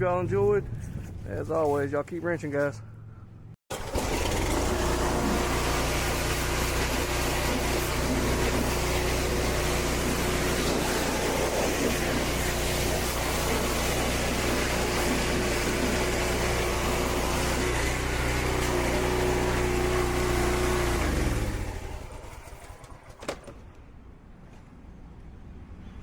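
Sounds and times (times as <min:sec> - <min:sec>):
lawn mower engine running: 0:03.7 - 0:23.6.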